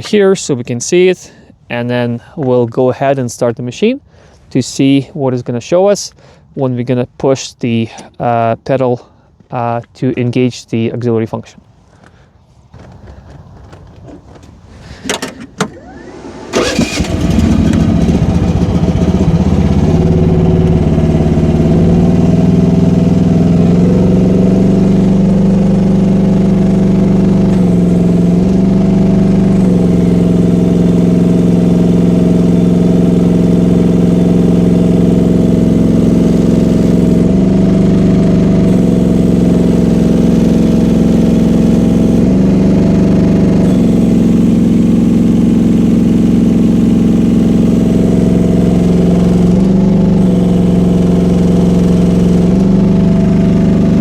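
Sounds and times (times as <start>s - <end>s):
small gasoline engine running: 15.0s - 54.0s.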